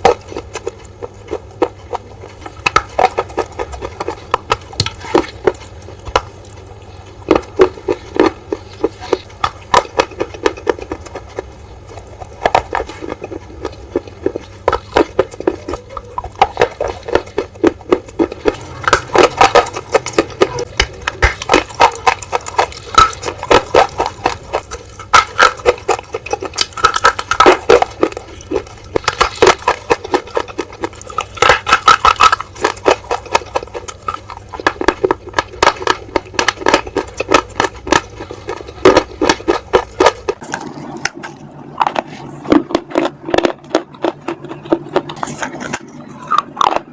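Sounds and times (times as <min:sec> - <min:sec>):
crunching of bitten brittle bars: 0:00.0 - 0:46.9.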